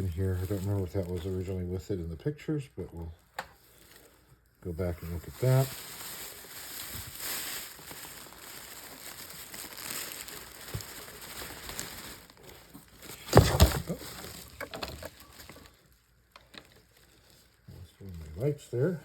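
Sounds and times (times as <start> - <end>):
packing material rustling: 0.0 - 1.6, 3.2 - 19.0
hands rummaging through box: 5.2 - 15.8
sharp rustle or knock: 13.2 - 15.2.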